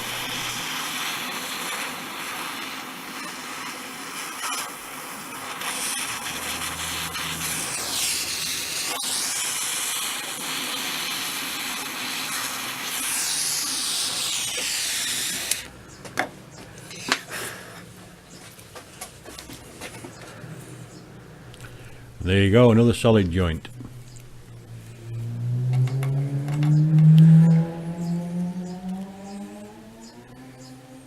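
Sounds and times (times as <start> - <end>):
blowtorch flame hissing: 0.0 - 15.7.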